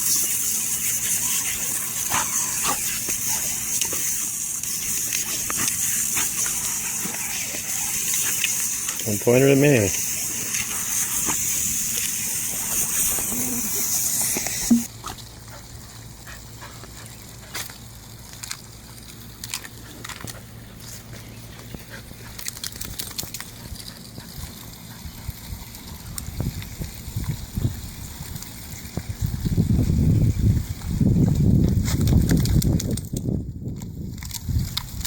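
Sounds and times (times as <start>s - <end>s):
faint ticks and splashes: 0.0s - 13.4s, 16.2s - 29.9s
water spray hissing: 0.0s - 15.0s.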